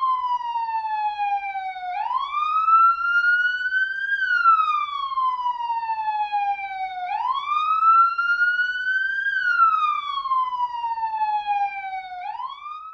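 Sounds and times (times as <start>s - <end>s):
police siren wailing: 0.0s - 12.9s.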